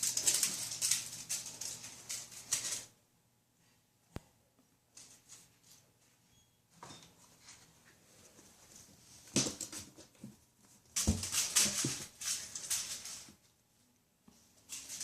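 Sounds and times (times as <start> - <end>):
kittens scuffling and scrabbling: 0.0 - 3.0, 4.9 - 6.2, 6.8 - 13.6, 14.2 - 15.0.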